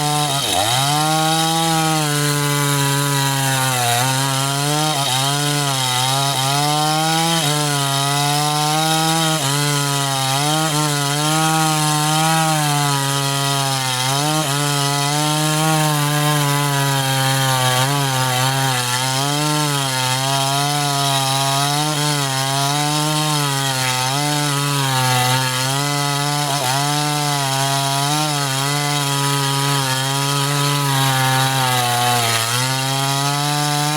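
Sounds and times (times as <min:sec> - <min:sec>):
chainsaw cutting log: 0:00.0 - 0:33.9.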